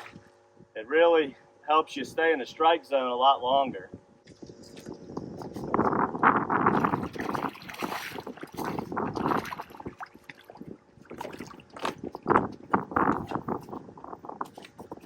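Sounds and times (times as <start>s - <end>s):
water lapping against boat hull: 6.6s - 15.0s.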